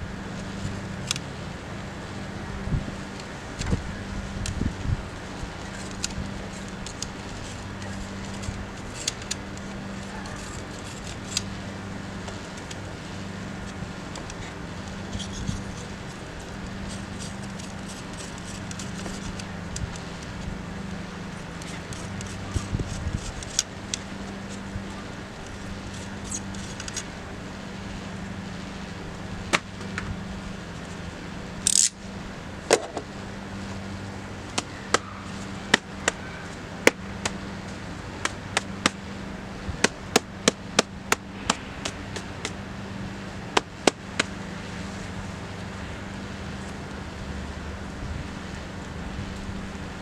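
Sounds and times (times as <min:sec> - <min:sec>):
steady low hum: 0:00.0 - 0:50.0
rustling scrape: 0:04.5 - 0:31.0.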